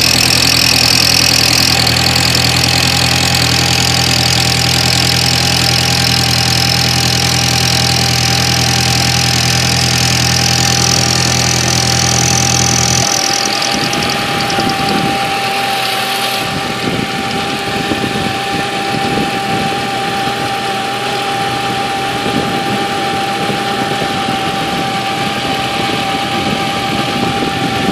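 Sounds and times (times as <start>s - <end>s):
car engine idling: 0.0s - 26.1s.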